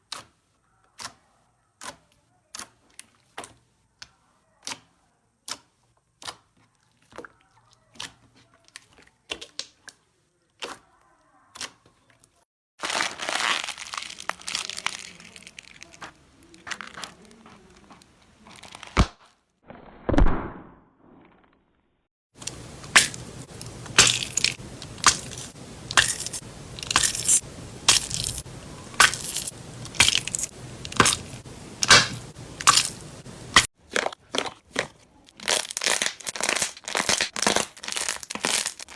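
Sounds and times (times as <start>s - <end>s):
crunchy slime crackling: 12.8s - 19.2s, 22.4s - 38.9s
sharp snap: 29.0s - 33.7s.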